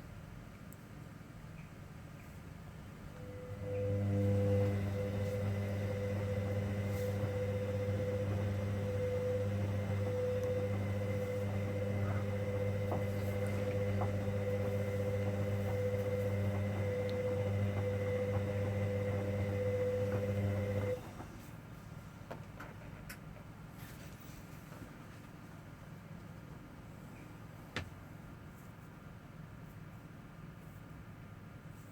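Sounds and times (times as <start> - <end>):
washing machine motor humming: 2.9 - 21.7.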